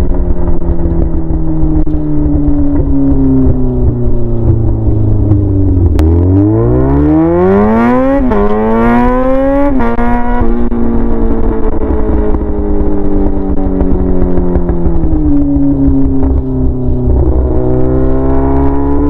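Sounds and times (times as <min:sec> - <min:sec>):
motorcycle engine accelerating: 0:00.0 - 0:19.0.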